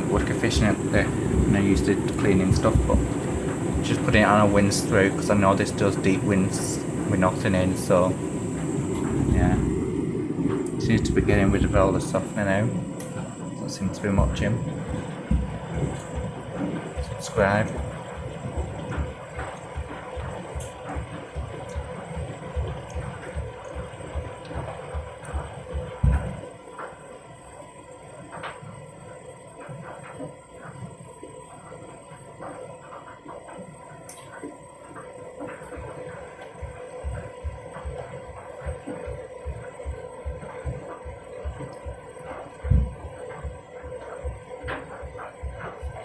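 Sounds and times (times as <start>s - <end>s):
washing machine hum: 0.0s - 46.0s
washing machine drum thudding: 14.1s - 17.5s.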